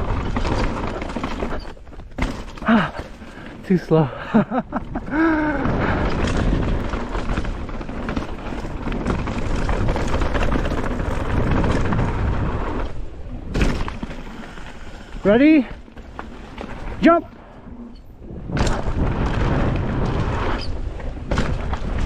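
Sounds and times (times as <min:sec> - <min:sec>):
tyres rumbling over dirt: 0:00.0 - 0:22.0
wind buffeting microphone: 0:04.8 - 0:13.5.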